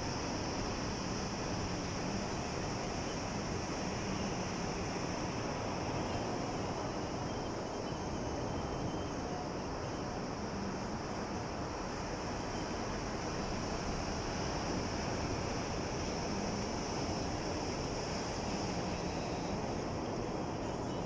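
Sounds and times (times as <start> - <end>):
constant high hiss: 0.0 - 21.0.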